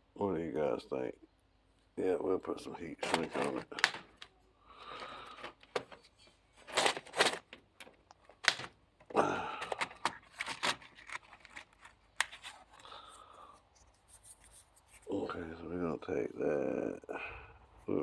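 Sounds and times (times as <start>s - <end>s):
crinkly packaging rustling: 2.6s - 15.4s.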